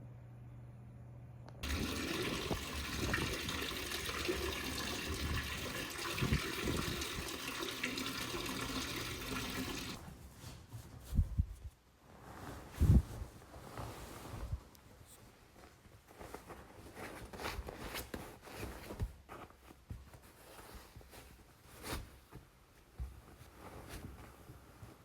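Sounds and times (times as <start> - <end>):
water running: 1.6 - 10.0.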